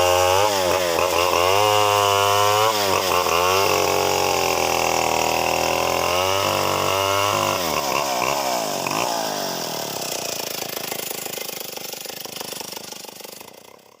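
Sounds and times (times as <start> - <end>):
chainsaw cutting wood: 0.0 - 14.0.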